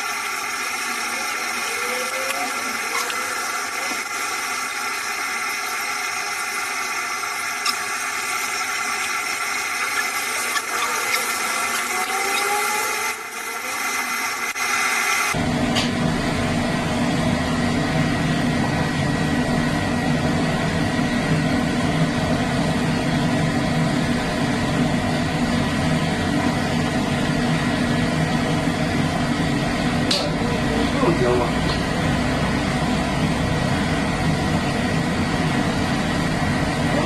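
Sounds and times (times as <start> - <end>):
low machine hum and rumble: 15.3 - 37.0.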